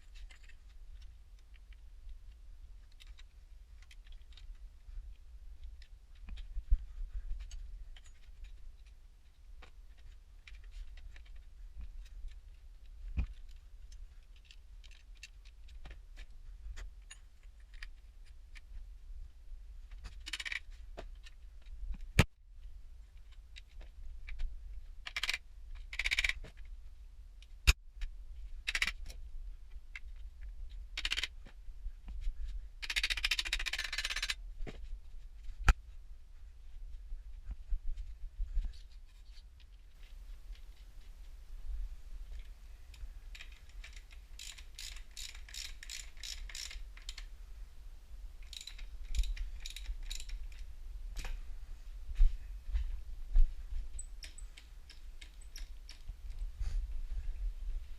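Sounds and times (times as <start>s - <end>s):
small metal parts clicking: 0.1s - 1.6s, 20.0s - 21.4s, 25.0s - 26.5s, 28.6s - 29.2s, 31.0s - 31.3s, 32.8s - 34.4s, 42.3s - 47.3s, 48.4s - 51.3s, 54.0s - 56.1s.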